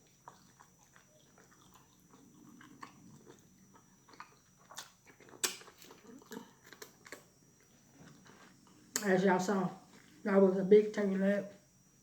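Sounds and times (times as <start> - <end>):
chewing with wet mouth smacks: 0.0 - 9.1.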